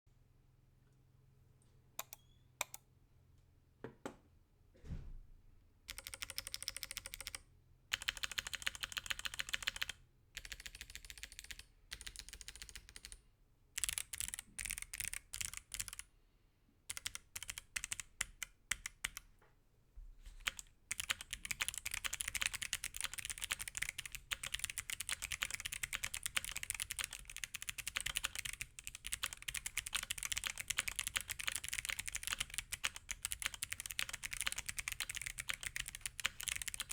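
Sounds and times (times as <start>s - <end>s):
clicky mechanical keyboard typing: 2.0s - 2.8s, 5.9s - 13.2s, 13.8s - 16.1s, 16.9s - 19.3s, 20.4s - 36.9s.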